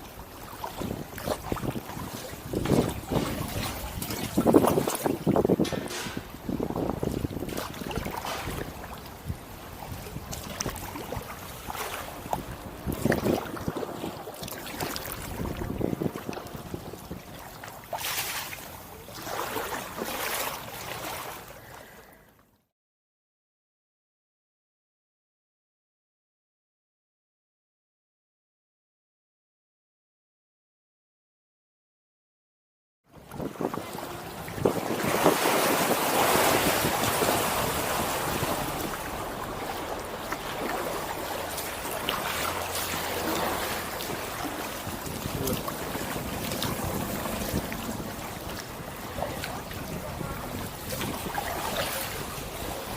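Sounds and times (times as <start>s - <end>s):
paddle strokes splashing in water: 0.0s - 22.1s, 33.2s - 52.9s
wind on the microphone: 0.2s - 17.7s, 33.1s - 52.9s.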